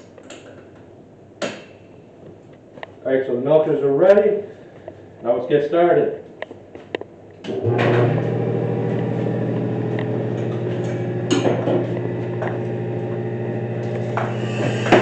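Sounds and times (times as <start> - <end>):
vacuum pump humming: 7.4 - 15.0.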